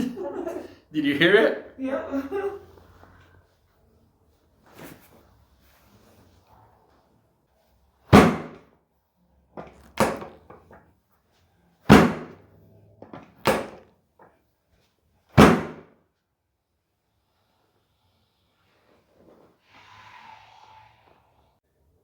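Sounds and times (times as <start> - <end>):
loud sharp thumps: 8.1 - 8.6, 11.9 - 12.4, 13.4 - 13.8, 15.4 - 15.9.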